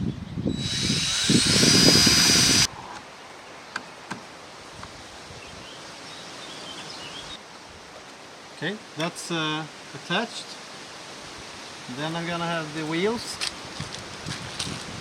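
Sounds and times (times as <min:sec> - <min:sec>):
power drill motor whine: 0:00.5 - 0:02.7.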